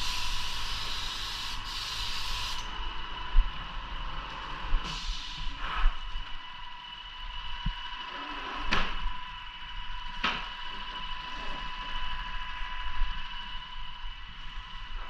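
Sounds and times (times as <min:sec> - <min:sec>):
sharp sprayer bursts: 0:00.0 - 0:02.6
paint sprayer whining: 0:00.0 - 0:02.7.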